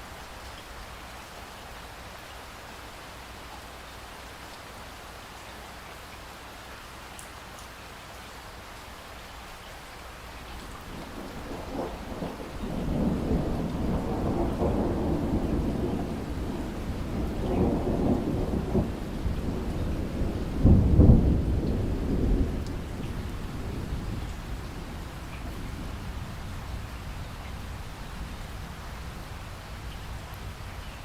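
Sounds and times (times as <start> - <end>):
steady rain: 0.0 - 31.0
thunder rumbling: 10.8 - 30.8.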